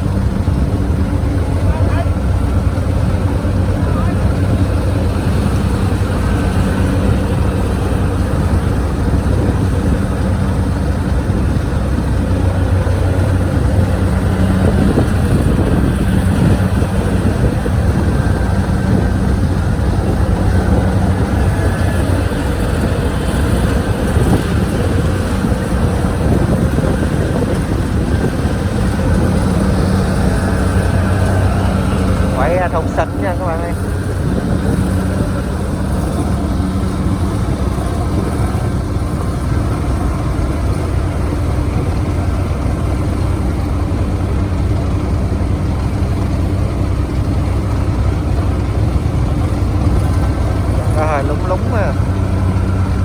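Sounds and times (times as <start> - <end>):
combine harvester engine drone: 0.0 - 53.0.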